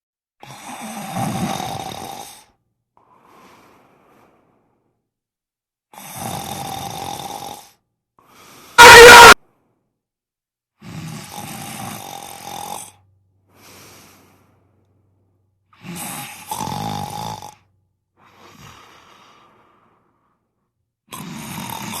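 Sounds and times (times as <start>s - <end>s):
heavy snoring: 0.4s - 2.4s, 6.0s - 7.7s, 10.9s - 13.0s, 15.8s - 17.6s, 21.1s - 22.0s.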